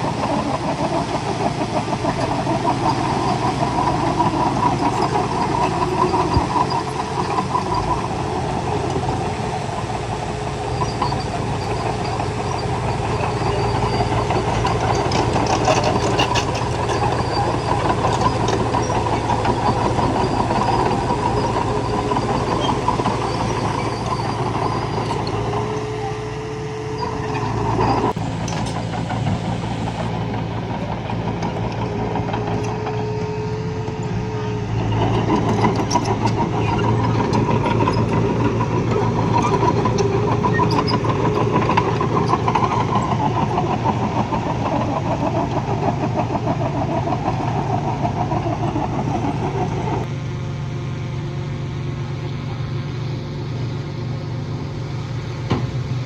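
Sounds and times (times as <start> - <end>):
diesel machinery running: 0.0 - 56.0
metallic clanks: 13.2 - 21.0.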